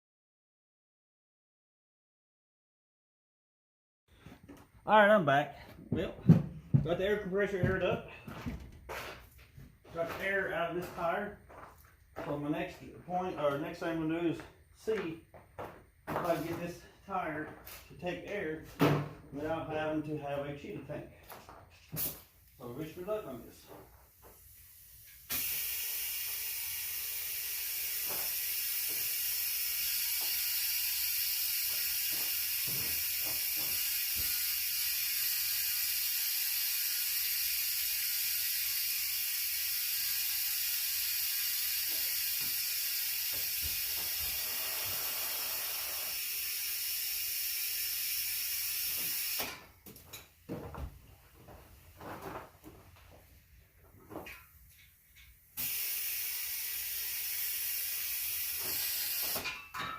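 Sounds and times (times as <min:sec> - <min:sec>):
compressed air hissing: 0:24.2 - 0:30.4, 0:40.8 - 0:46.4, 0:55.6 - 0:59.4.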